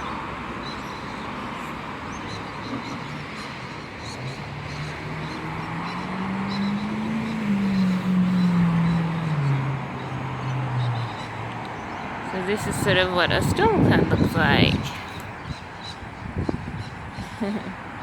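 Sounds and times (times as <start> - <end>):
vehicle engine passing by: 4.0 - 15.5.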